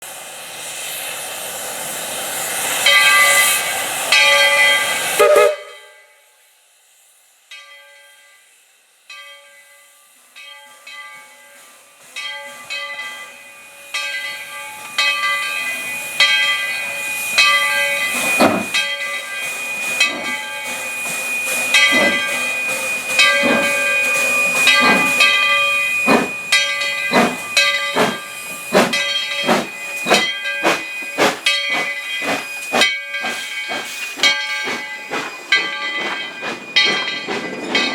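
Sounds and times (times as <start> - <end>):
steam locomotive exhaust chuffs: 0.0 - 7.7, 8.4 - 37.9
steam whistle: 4.9 - 6.1.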